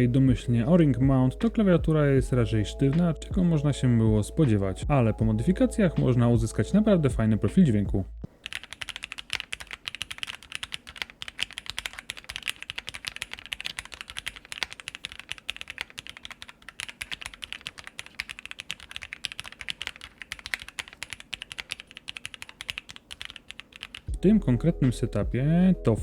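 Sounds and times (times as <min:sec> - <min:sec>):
mechanical keyboard typing: 0:08.4 - 0:24.1.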